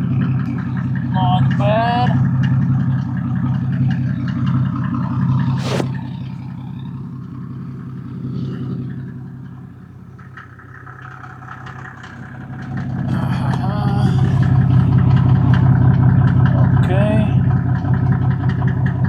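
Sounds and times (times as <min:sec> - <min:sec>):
diesel engine idling: 0:00.0 - 0:19.0
short sharp noise: 0:05.5 - 0:06.1.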